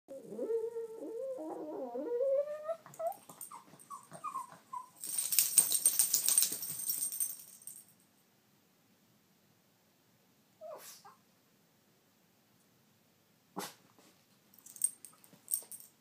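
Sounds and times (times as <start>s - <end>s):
dog whimpering: 0.1s - 5.0s
dog whining: 0.1s - 5.0s, 10.6s - 11.2s.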